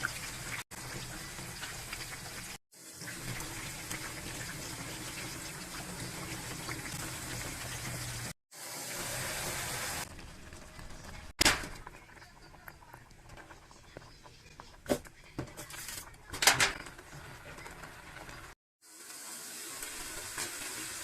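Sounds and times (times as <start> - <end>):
water running from kitchen tap: 0.0 - 12.7, 17.0 - 21.0.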